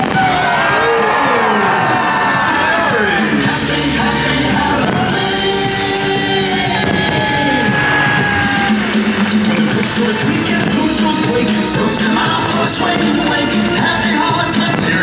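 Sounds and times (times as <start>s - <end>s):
loud soundtrack music with sliding tones: 0.0s - 15.0s.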